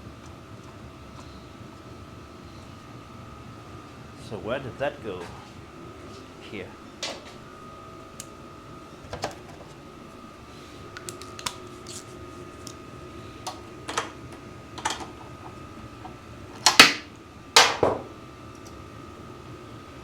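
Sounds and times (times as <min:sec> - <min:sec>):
tools clicking and knocking: 0:14.8 - 0:17.0.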